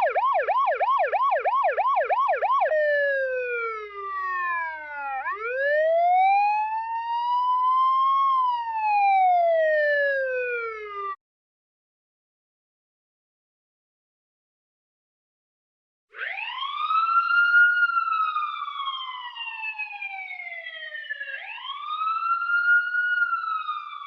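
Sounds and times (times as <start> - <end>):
electronic siren yelping and wailing: 0.0 - 11.2, 16.2 - 24.0.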